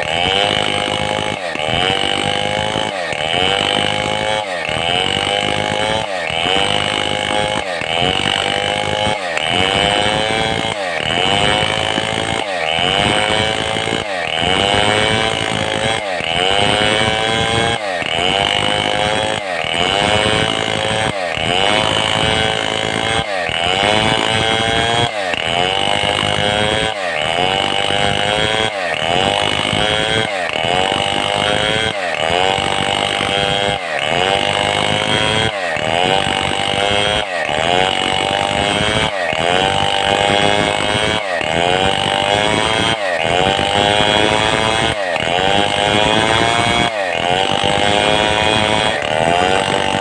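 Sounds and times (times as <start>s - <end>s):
chainsaw cutting log: 0.0s - 50.0s.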